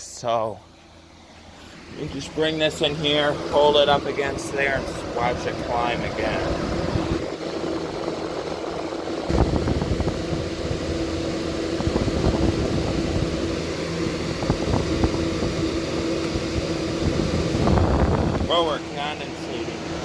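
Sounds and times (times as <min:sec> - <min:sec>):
air conditioner humming: 0:00.0 - 0:20.0
air rumbling on microphone: 0:01.5 - 0:20.0.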